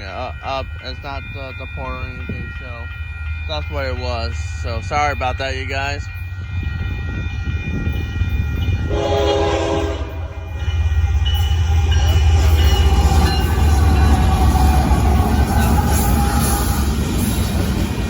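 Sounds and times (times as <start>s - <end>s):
deep locomotive rumble: 0.0s - 18.0s
locomotive air horn chord: 8.9s - 10.6s.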